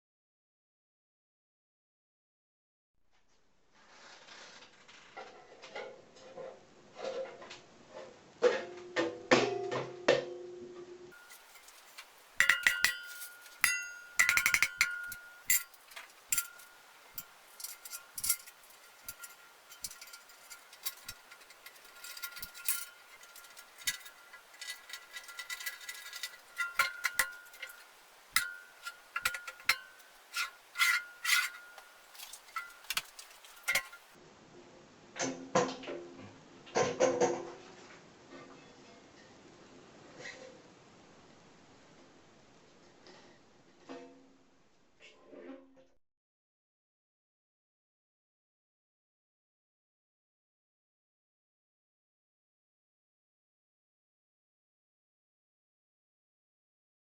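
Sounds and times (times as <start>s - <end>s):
metallic clinks and taps: 11.2s - 34.2s.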